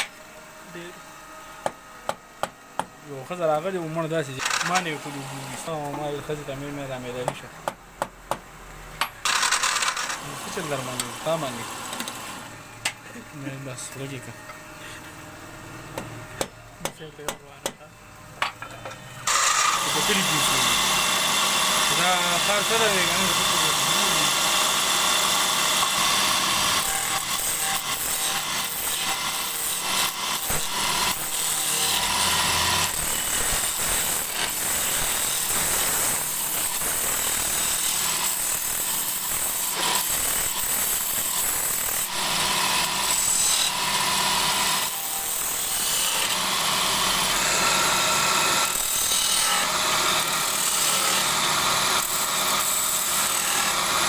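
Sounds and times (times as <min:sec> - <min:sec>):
wood lathe cutting wood: 0:00.0 - 0:07.4, 0:09.2 - 0:16.4, 0:19.2 - 0:54.0.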